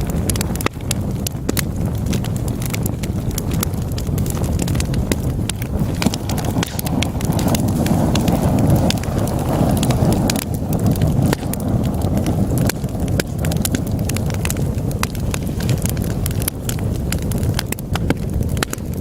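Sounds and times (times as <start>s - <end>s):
flames rushing: 0.0s - 19.0s
logs crackling and popping: 0.0s - 19.0s.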